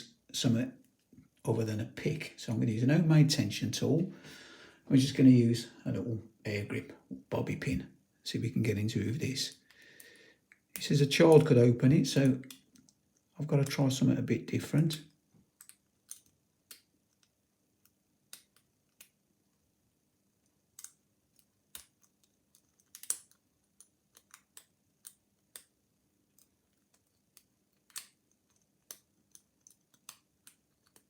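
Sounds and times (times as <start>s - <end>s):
small metallic clicks in a padlock: 15.6s - 19.2s, 20.7s - 31.0s.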